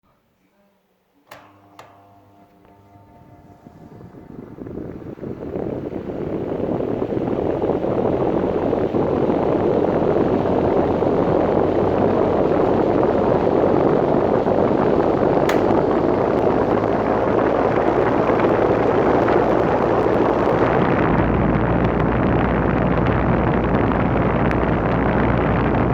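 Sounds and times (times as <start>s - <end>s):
electric fan running: 1.2s - 25.9s
sharp click: 1.3s - 3.0s, 15.5s - 15.8s.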